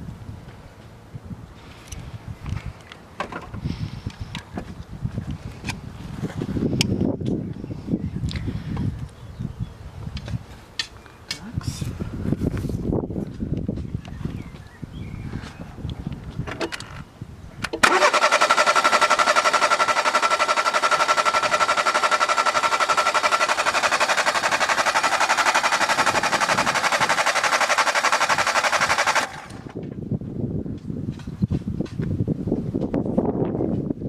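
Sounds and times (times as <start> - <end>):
starter motor cranking engine: 17.7 - 29.8.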